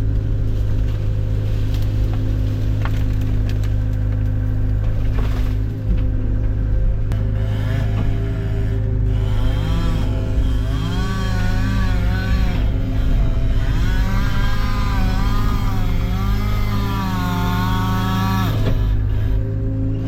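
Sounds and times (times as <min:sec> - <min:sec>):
low engine drone: 0:00.0 - 0:20.0
chainsaw revving: 0:07.1 - 0:20.0.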